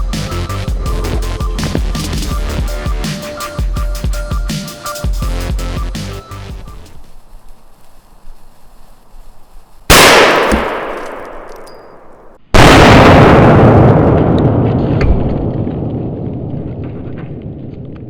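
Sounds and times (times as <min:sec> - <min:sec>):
firecracker bangs with rumble: 0:09.9 - 0:11.6, 0:12.6 - 0:17.1.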